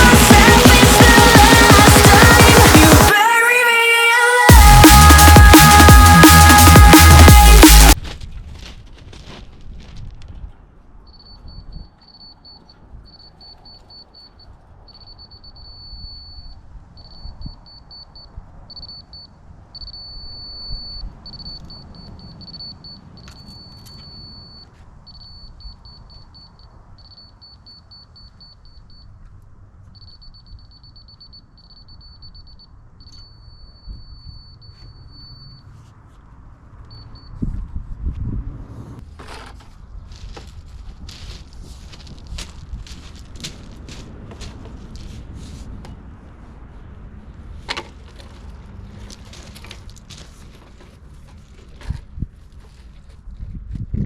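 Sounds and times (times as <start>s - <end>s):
high-pitched warning beeper: 0.0s - 8.0s, 11.1s - 29.2s, 30.0s - 35.8s
diesel engine rumbling: 41.6s - 51.9s.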